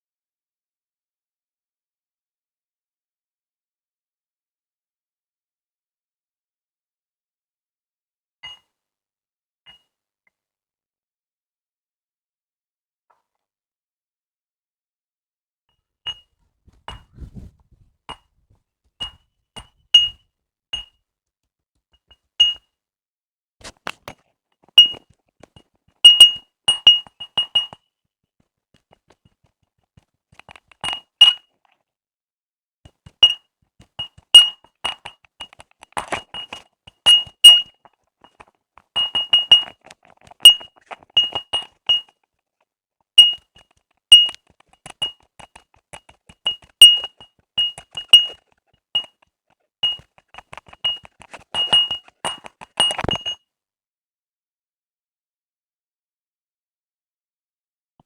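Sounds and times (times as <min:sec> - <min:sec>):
sharp metallic clinks and pings: 0:26.1 - 0:27.7, 0:37.1 - 0:37.7, 0:40.5 - 0:42.1, 0:43.2 - 0:43.4, 0:44.1 - 0:44.4, 0:46.5 - 0:48.4, 0:50.9 - 0:53.4.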